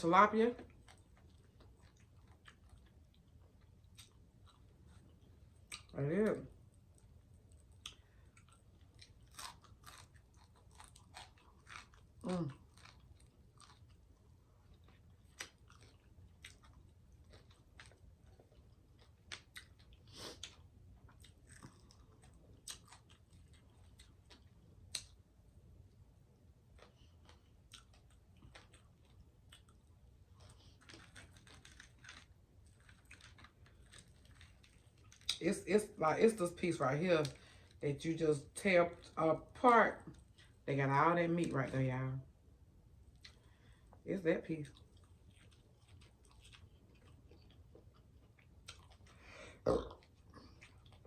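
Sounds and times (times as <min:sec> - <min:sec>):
chewing and crunching fish: 0:00.6 - 0:06.1, 0:06.8 - 0:25.2, 0:26.7 - 0:35.4, 0:44.6 - 0:51.0.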